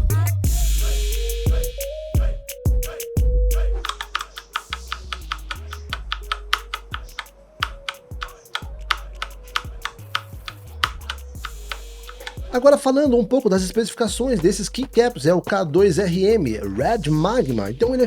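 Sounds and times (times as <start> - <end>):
background music with bass: 0.0 - 18.0
mechanical keyboard typing: 5.5 - 11.3.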